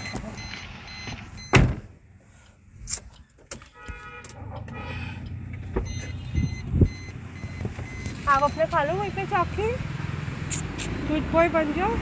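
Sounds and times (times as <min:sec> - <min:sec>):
vehicle engine rumbling: 0:00.0 - 0:12.0.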